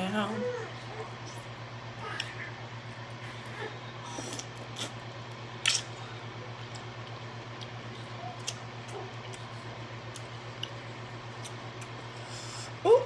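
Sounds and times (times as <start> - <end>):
low electrical hum: 0.0 - 13.0
wet mouth clicks and smacks: 5.6 - 5.9.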